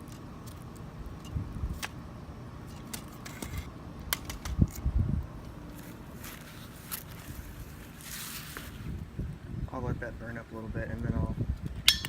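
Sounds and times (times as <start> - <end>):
plastic burning with crackles: 0.0 - 9.3.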